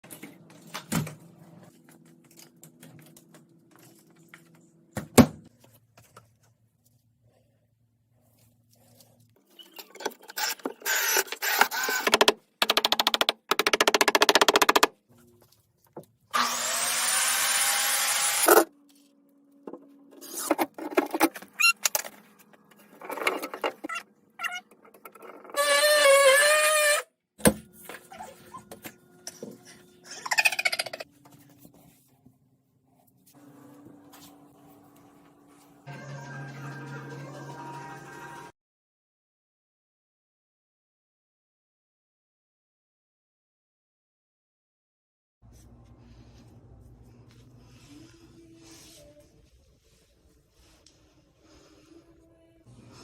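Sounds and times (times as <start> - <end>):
power drill drilling wood: 16.3 - 18.7.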